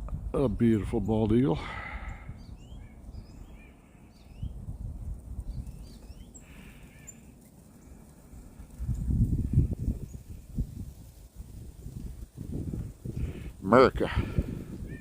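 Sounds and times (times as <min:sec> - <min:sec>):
faint bird chirps: 0:01.8 - 0:04.6, 0:05.5 - 0:08.0.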